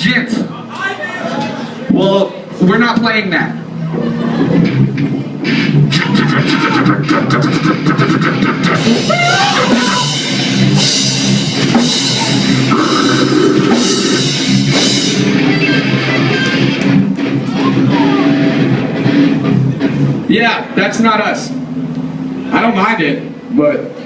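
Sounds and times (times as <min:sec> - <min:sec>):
electric guitar: 0:03.6 - 0:20.8
loud rock music: 0:03.6 - 0:22.5.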